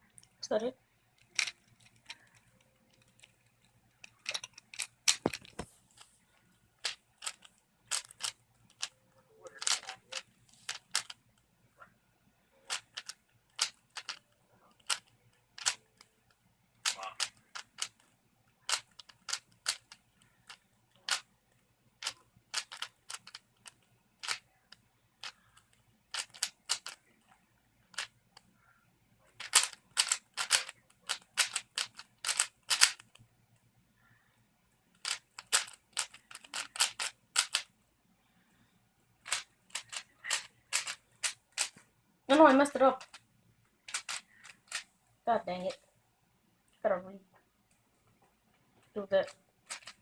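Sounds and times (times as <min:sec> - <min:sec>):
puzzle cube plastic clicks: 0:01.2 - 0:11.4, 0:12.6 - 0:21.3, 0:22.0 - 0:28.5, 0:29.3 - 0:33.3, 0:35.0 - 0:37.7, 0:39.2 - 0:43.2, 0:43.9 - 0:44.9, 0:49.2 - 0:50.0.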